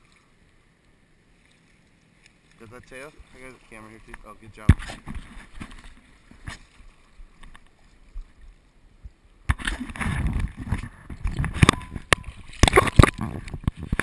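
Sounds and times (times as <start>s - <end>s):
fish thrashing and splashing: 9.5s - 14.0s.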